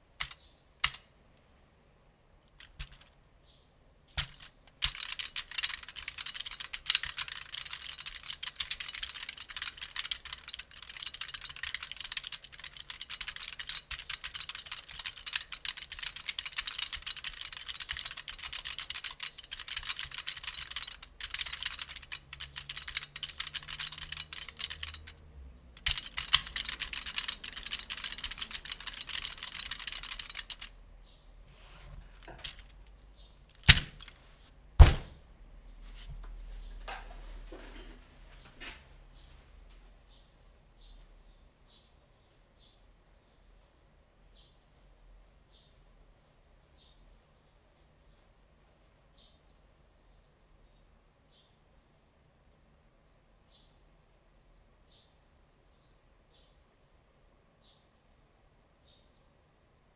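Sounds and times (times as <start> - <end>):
typewriter keyboard typing: 0.2 - 1.0, 2.6 - 3.1, 4.2 - 25.2, 25.8 - 30.8, 32.2 - 32.7, 33.5 - 34.2.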